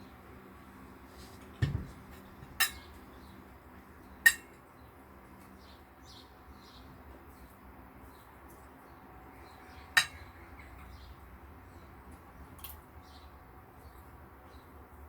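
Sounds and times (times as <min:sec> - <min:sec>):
cutlery clinking on a dish: 0:01.6 - 0:02.9, 0:04.3 - 0:04.6, 0:10.0 - 0:10.4
cutlery thumping on a dish: 0:10.0 - 0:10.2.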